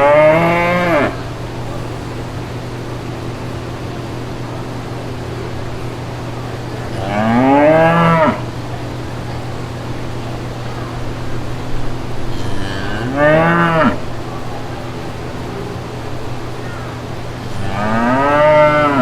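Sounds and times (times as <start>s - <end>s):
cow mooing: 0.0s - 1.3s, 6.9s - 8.5s, 12.2s - 14.1s, 17.4s - 19.0s
low background hum: 0.0s - 19.0s.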